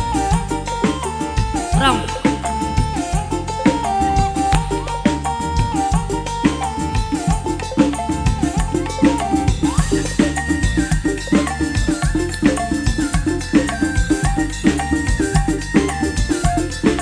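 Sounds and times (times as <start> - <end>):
live band playing: 0.0 - 17.0
strong bass: 1.4 - 6.2
fast drum pattern: 1.6 - 3.5, 4.5 - 5.2.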